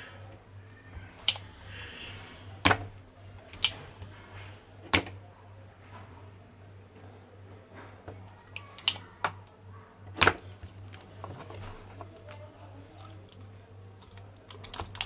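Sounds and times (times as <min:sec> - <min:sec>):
mains hum: 0:00.0 - 0:15.0
tools tapping circuit board: 0:02.6 - 0:04.1, 0:04.8 - 0:05.2, 0:08.5 - 0:10.6, 0:14.0 - 0:15.0.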